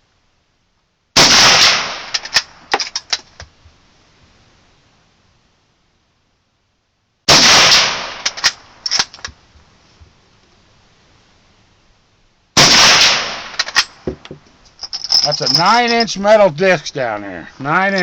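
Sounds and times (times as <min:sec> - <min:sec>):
rifle shots: 0:01.2 - 0:02.6, 0:07.3 - 0:09.1, 0:12.6 - 0:14.0.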